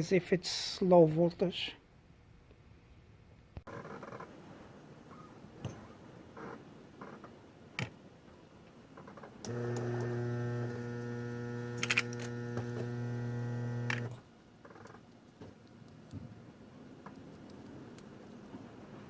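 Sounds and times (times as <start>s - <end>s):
small clicks: 9.4s - 16.2s
electric tool humming: 9.5s - 14.2s.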